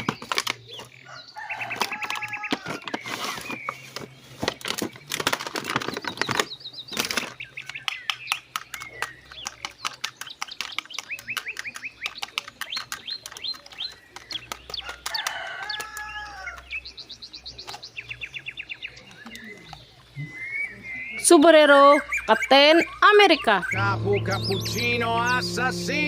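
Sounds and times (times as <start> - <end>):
rapid clicks: 5.1 - 16.0
bird-like chirping: 5.8 - 26.0.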